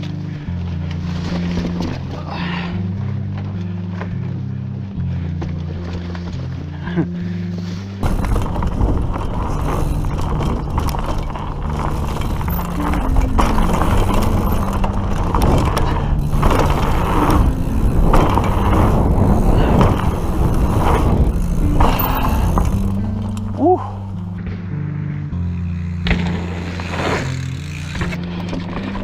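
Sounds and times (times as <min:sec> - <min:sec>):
music with stepped bass line: 0:00.0 - 0:29.0
bike tyre and chain rattle: 0:08.0 - 0:24.2, 0:25.4 - 0:29.0.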